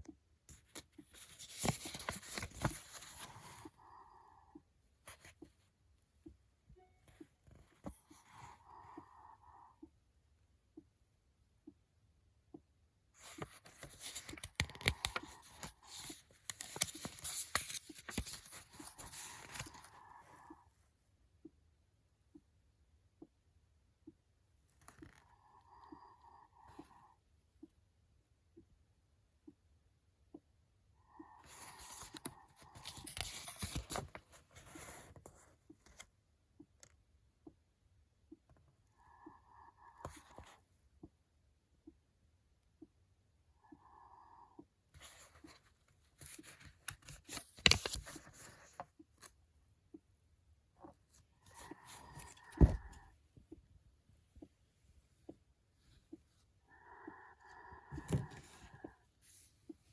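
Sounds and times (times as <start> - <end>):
packaging crinkling and clicking: 13.5 - 19.8.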